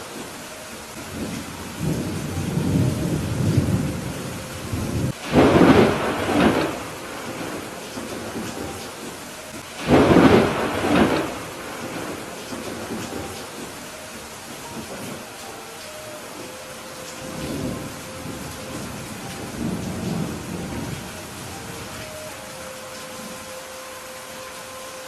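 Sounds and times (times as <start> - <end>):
steady rain: 0.0 - 25.0
sharp crackling thunderclaps: 0.9 - 13.8, 17.2 - 22.0
low thunder rumble: 1.0 - 13.8, 17.2 - 22.2.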